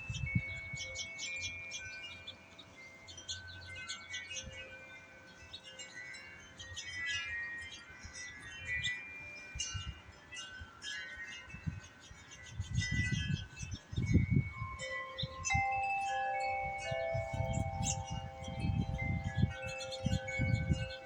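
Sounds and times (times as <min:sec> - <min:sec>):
wind buffeting microphone: 0:00.0 - 0:01.5, 0:11.5 - 0:21.0
wind chimes ringing: 0:00.0 - 0:21.0.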